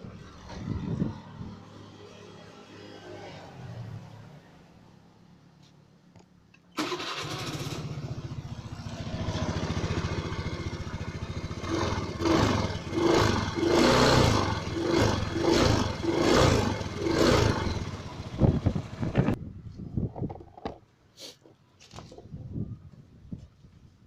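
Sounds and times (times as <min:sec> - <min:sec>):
scooter engine idling and revving: 0:00.0 - 0:04.9, 0:06.8 - 0:19.4.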